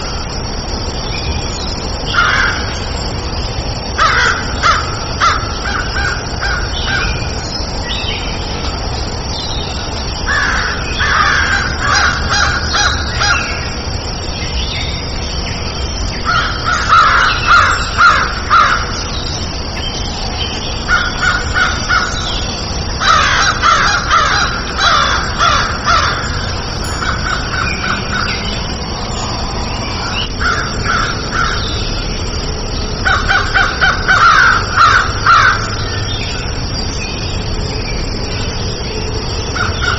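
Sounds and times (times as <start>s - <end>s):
steady background hiss: 0.0s - 39.9s
crow cawing: 23.0s - 28.3s.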